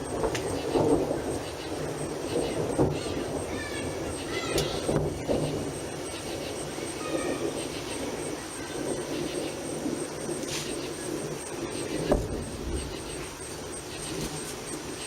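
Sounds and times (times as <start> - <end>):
thunder rumbling: 0.0 - 15.0.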